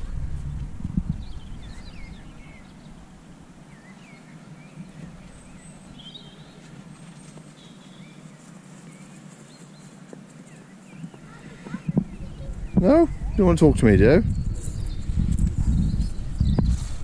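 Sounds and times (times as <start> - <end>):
low steady rumble: 0.0 - 3.7
small birds chirping: 1.0 - 17.0.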